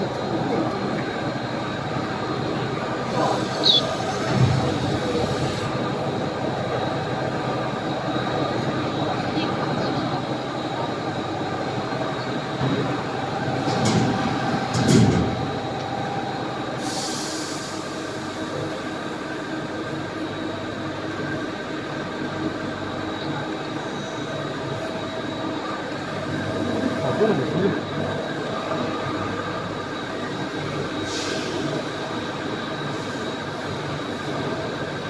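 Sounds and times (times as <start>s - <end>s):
machine tools humming: 0.0s - 16.8s.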